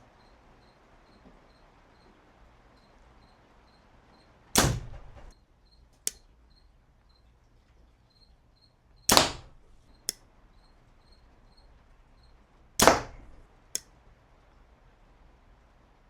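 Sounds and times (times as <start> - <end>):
faint click: 6.0 - 6.3.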